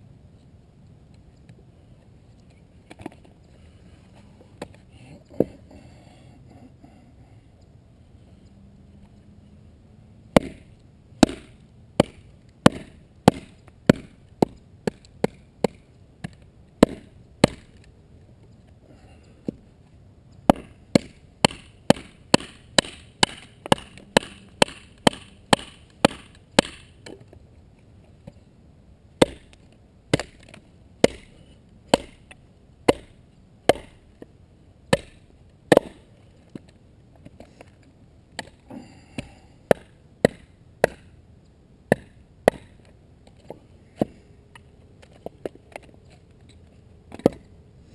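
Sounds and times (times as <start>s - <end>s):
knife striking wood: 10.4s - 17.8s, 20.5s - 27.2s, 29.2s - 34.0s, 34.9s - 36.1s, 39.2s - 41.1s, 41.9s - 42.7s.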